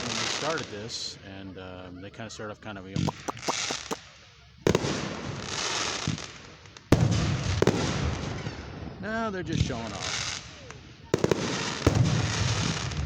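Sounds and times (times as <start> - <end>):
fireworks popping: 3.0 - 4.0
fireworks crackling: 3.1 - 4.0.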